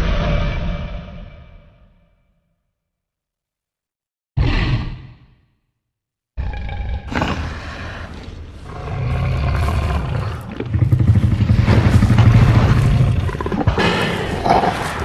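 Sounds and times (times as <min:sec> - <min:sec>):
deep rumbling creature roar: 0:06.4 - 0:15.0.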